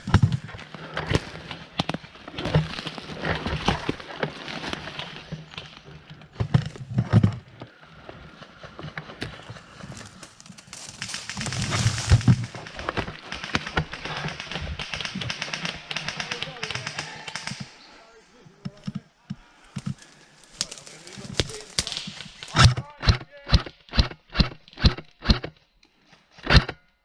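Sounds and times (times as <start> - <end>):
footsteps on woodland ground: 0.0 - 14.3, 16.6 - 23.8
gear rustling and knocking: 8.6 - 17.8.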